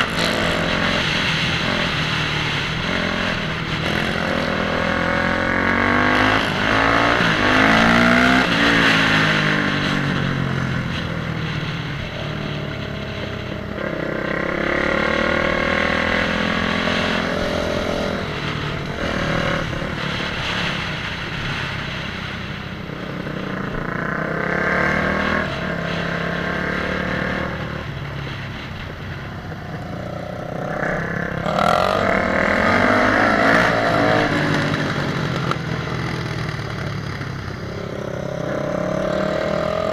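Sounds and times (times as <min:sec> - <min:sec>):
motorcycle engines revving: 0:00.0 - 0:39.9.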